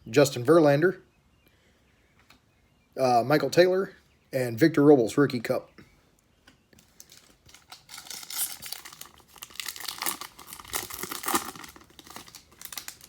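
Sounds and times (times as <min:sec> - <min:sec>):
foil wrapper crinkling and tearing: 0:06.8 - 0:13.0.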